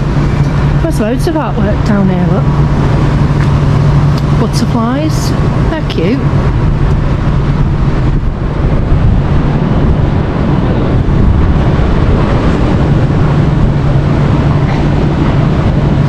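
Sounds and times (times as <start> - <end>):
steady low hum: 0.0 - 16.0
wind buffeting microphone: 0.0 - 16.0.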